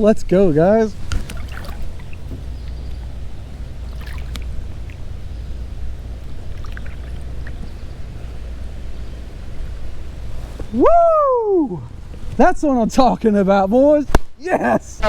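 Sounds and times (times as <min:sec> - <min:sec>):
water lapping around kayak: 0:00.0 - 0:10.8, 0:11.8 - 0:12.4
steady low rumble: 0:00.0 - 0:14.1.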